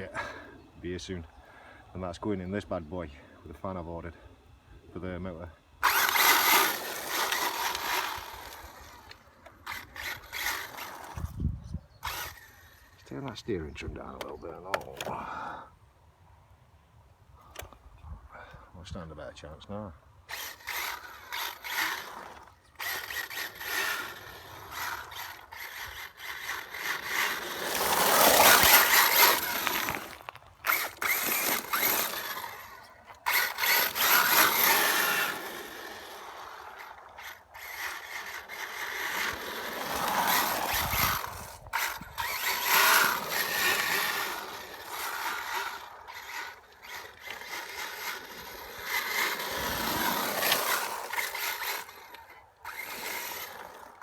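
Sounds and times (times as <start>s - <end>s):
electric rc car motor: 3.6s - 15.6s, 20.1s - 54.0s.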